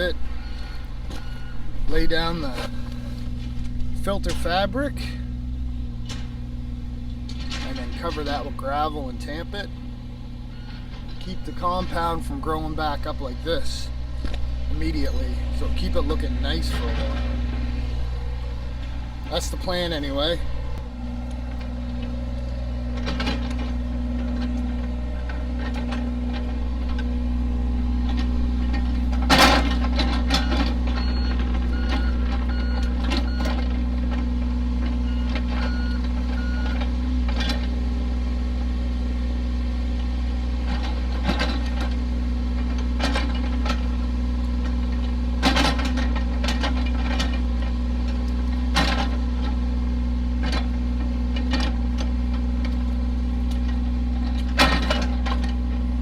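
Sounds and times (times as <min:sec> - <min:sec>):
heavy machine engine running: 0:00.0 - 0:56.0
backup alarm beeping: 0:00.1 - 0:01.9, 0:10.5 - 0:12.1, 0:30.4 - 0:33.6, 0:35.0 - 0:36.8.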